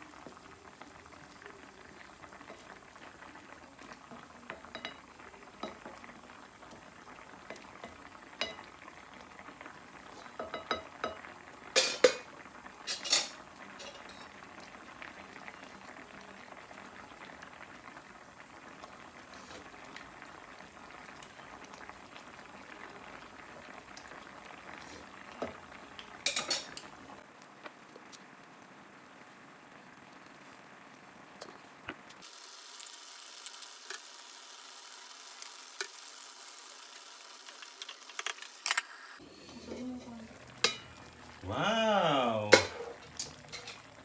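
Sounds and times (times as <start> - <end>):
pot simmering and bubbling: 0.0 - 44.0
metal utensils clinking on pot: 4.6 - 5.0, 11.8 - 14.3, 26.2 - 26.8, 39.6 - 41.0, 42.5 - 43.9.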